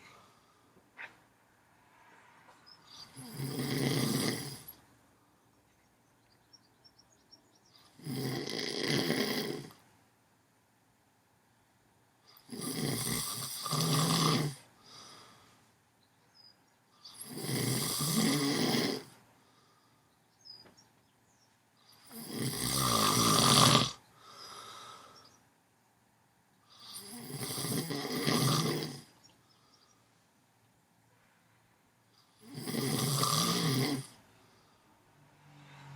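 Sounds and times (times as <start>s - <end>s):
soft breath: 0.0s - 1.0s, 14.8s - 15.8s, 19.2s - 20.4s, 24.1s - 25.5s, 29.3s - 30.4s, 34.3s - 35.9s
man snoring loudly: 3.0s - 4.8s, 7.9s - 9.8s, 12.4s - 15.1s, 17.1s - 19.1s, 22.0s - 24.9s, 26.8s - 29.1s, 32.3s - 34.2s.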